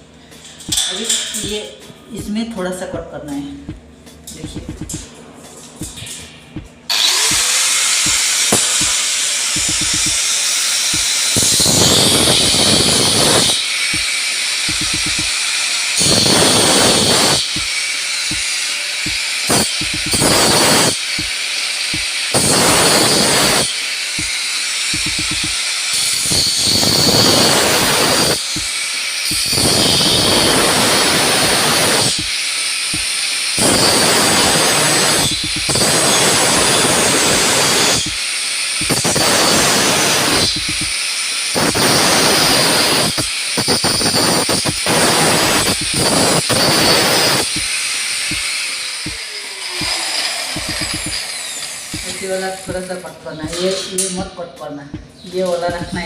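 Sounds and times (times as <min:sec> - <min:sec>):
harsh hissing of metal cutting: 0:06.9 - 0:53.8
grinder disc winding down whine: 0:49.0 - 0:52.9.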